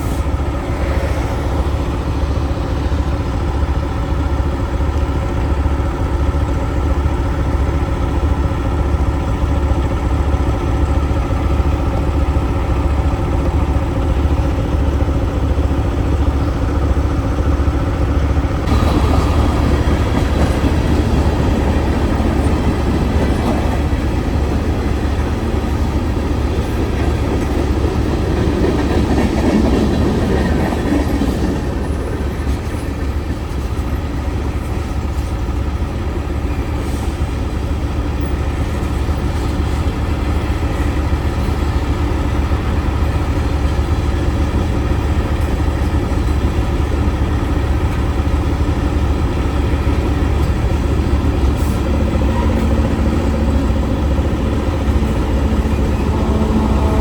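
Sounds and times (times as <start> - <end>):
diesel truck engine droning: 48.0 - 57.0
rough rumbling noise: 50.7 - 57.0.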